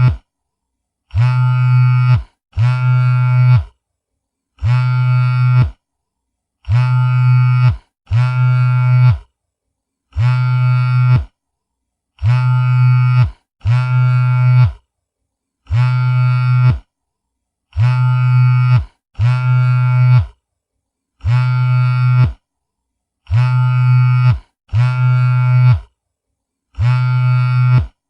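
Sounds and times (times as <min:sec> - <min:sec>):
mobile phone vibrating: 0:00.0 - 0:00.3, 0:01.1 - 0:03.8, 0:04.6 - 0:05.9, 0:06.6 - 0:09.4, 0:10.1 - 0:11.4, 0:12.2 - 0:14.9, 0:15.6 - 0:17.0, 0:17.7 - 0:20.4, 0:21.2 - 0:22.5, 0:23.2 - 0:26.0, 0:26.7 - 0:28.0.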